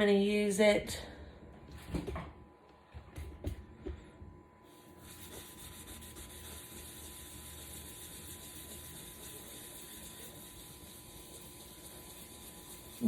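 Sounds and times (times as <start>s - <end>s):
sponge scrubbing glass stovetop: 4.8s - 13.0s.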